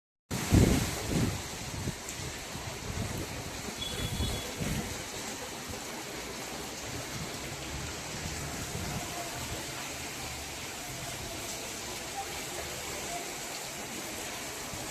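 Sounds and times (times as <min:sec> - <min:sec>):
wind buffeting microphone: 0:00.3 - 0:05.0
heavy rain falling: 0:00.3 - 0:14.9.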